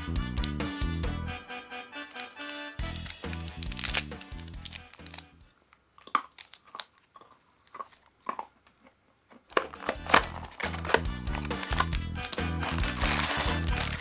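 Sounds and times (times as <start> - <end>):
background music: 0.0 - 5.5, 9.6 - 14.0
plastic parts clicking and crinkling: 2.1 - 14.0.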